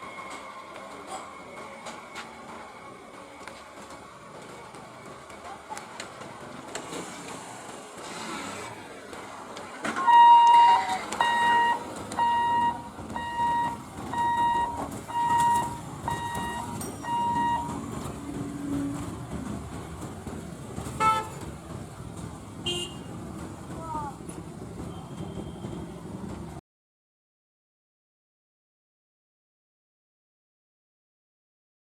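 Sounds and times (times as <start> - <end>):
road traffic noise: 0.0 - 26.6
electronic warning beeper: 10.0 - 17.8.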